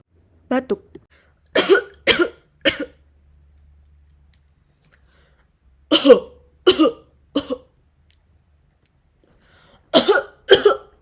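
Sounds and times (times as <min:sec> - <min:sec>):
person coughing: 0:01.6 - 0:03.0, 0:05.9 - 0:07.7, 0:09.9 - 0:11.0.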